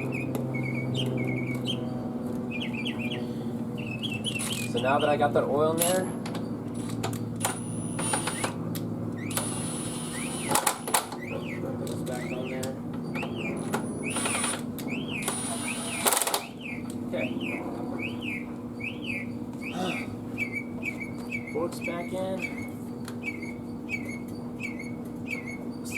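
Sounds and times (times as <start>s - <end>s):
bird chirping: 0.0s - 5.3s, 11.2s - 25.9s.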